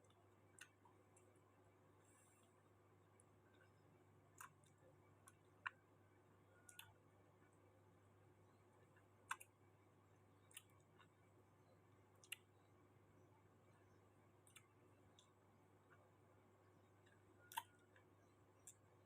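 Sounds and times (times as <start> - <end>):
low steady hum: 0.0 - 19.0
mouth clicks and smacks: 12.2 - 12.5.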